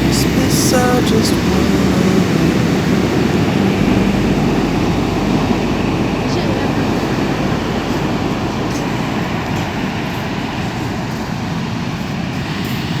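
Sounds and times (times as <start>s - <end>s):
rough sea roaring: 0.0s - 13.0s
wind: 0.0s - 13.0s.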